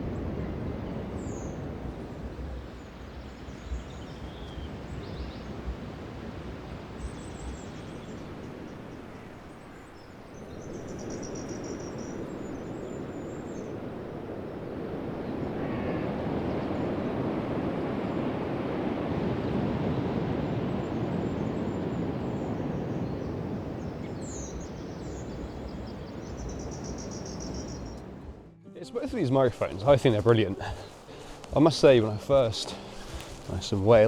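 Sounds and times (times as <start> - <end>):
rushing water: 0.0 - 34.0.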